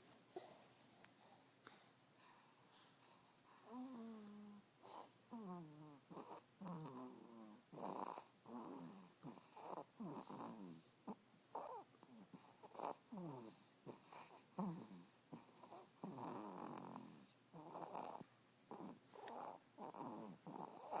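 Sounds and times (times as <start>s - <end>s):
snoring and snorts: 3.7s - 10.8s, 12.4s - 21.0s.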